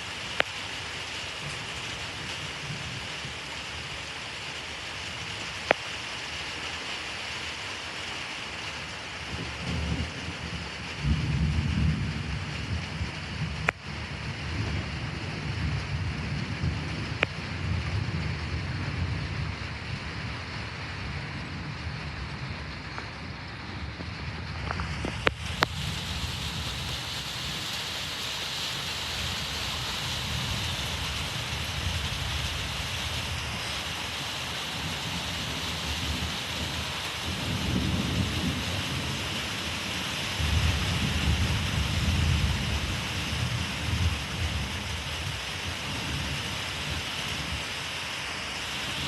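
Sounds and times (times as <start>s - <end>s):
rain hissing: 0.0s - 49.0s
thunder rumbling: 9.2s - 47.6s.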